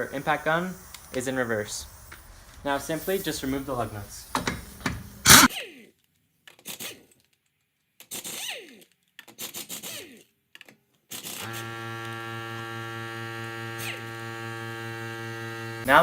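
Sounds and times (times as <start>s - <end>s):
air impact wrench whining: 0.0s - 5.5s, 11.1s - 16.0s.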